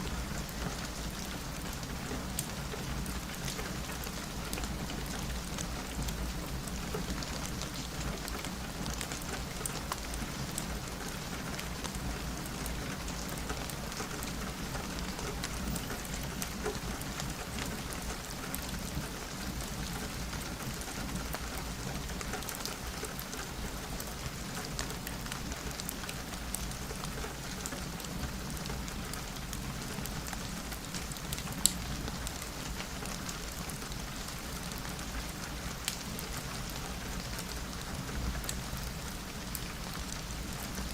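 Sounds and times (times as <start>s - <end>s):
rain on a window: 0.0s - 40.9s
fireplace crackling and popping: 30.4s - 34.8s.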